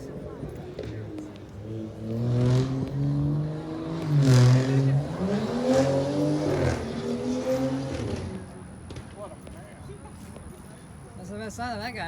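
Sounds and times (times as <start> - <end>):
vehicle engine accelerating: 1.7 - 8.5.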